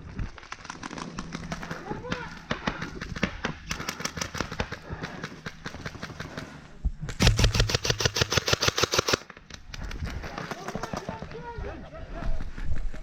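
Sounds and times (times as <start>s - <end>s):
airsoft guns firing: 2.0s - 9.3s.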